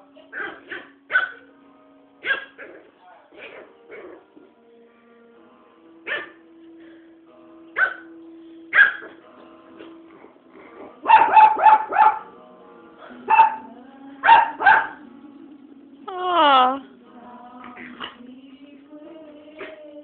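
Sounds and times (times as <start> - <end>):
puppy yapping: 2.2 - 2.8, 7.8 - 8.1, 8.8 - 9.2, 11.1 - 12.3.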